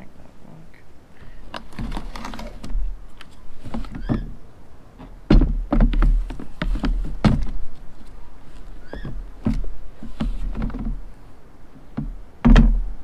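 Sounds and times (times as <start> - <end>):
squeak of rubbing material: 3.3 - 4.3, 8.5 - 9.4.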